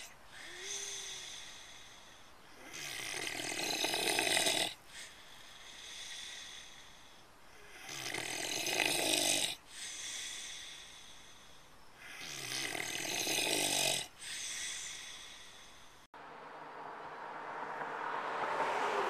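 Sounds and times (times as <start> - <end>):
soft breathing: 0.0 - 2.8, 4.7 - 7.9, 9.6 - 12.3, 14.0 - 16.1
pig snoring: 2.6 - 5.2, 7.6 - 10.3, 12.0 - 14.7.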